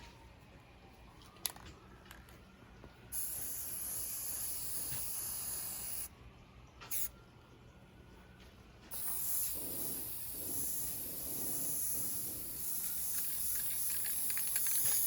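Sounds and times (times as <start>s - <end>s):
spray paint can hissing: 3.1s - 6.1s, 6.9s - 7.1s, 8.9s - 15.0s.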